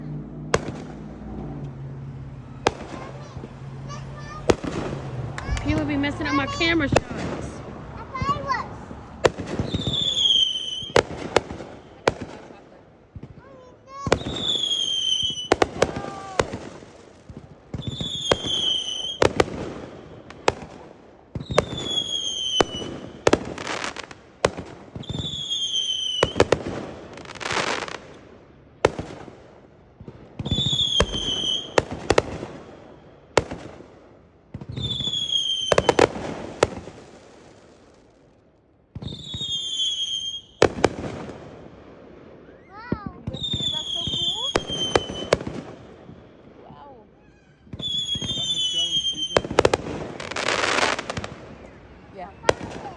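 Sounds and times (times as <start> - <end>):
firework bangs: 0.0 - 52.9
firework whistle: 9.4 - 12.2, 14.1 - 16.6, 17.7 - 20.5, 21.4 - 24.0, 25.0 - 26.6, 30.4 - 33.2, 34.7 - 36.2, 39.0 - 40.7, 42.4 - 45.4, 47.2 - 51.8
firework crackling hiss: 21.4 - 28.1, 47.8 - 51.6.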